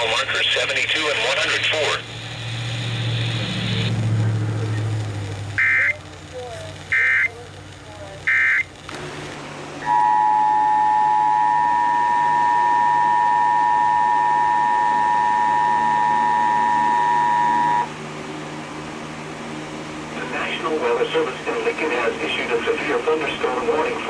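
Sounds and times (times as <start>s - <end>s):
two-tone alert signal: 9.8s - 17.9s.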